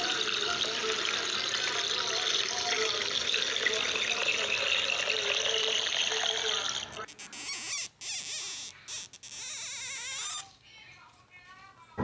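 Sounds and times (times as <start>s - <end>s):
running water: 0.0s - 7.1s.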